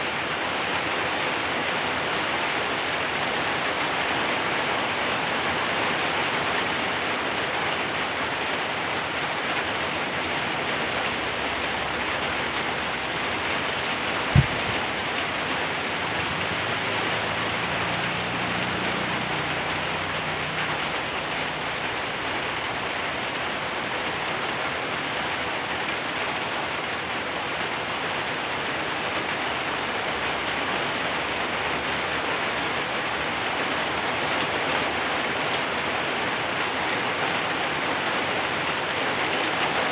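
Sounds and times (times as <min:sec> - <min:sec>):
steady rain falling: 0:00.0 - 0:39.9
sudden low thump: 0:14.3 - 0:14.9.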